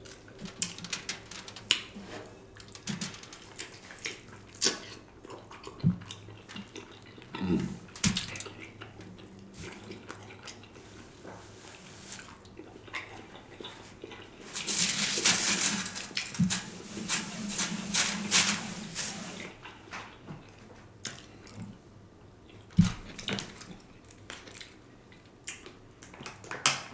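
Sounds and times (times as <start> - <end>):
wet chewing and lip-smacking: 3.6 - 7.6, 8.2 - 10.8.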